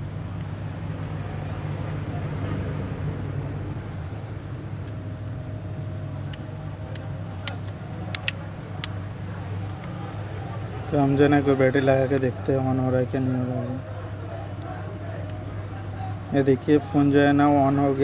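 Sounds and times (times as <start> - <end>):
plastic parts clicking together: 6.2 - 9.0.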